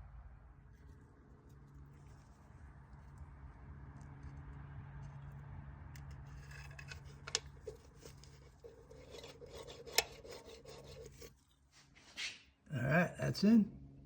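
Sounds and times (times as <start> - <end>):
small metal parts scraping: 6.0 - 11.5.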